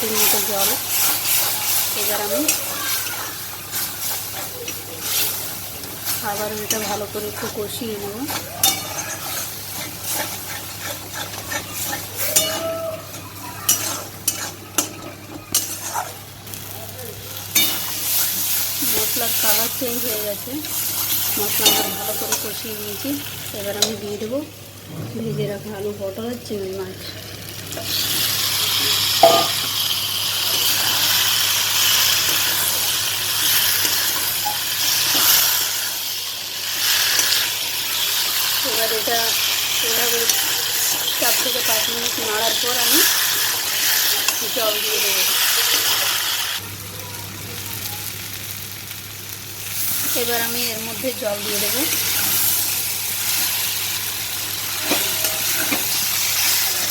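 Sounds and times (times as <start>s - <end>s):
paste frying and sizzling: 0.0s - 56.9s
spatula scraping a pan: 0.1s - 16.2s
metal utensil clinking on pan: 8.3s - 12.7s, 13.7s - 16.0s, 17.6s - 18.2s, 21.5s - 22.5s, 29.2s - 29.6s.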